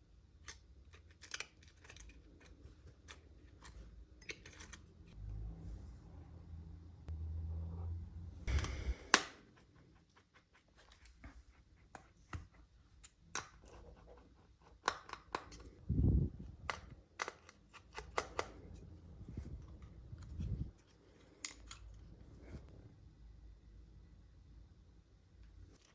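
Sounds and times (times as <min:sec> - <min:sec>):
hand tools clicking on phone: 0:16.7 - 0:18.8.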